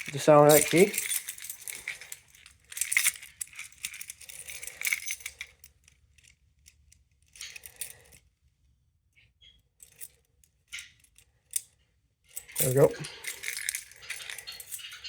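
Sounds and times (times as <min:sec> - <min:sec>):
keys jangling: 0:00.0 - 0:08.2, 0:12.3 - 0:15.0
metallic clicks: 0:00.0 - 0:08.2.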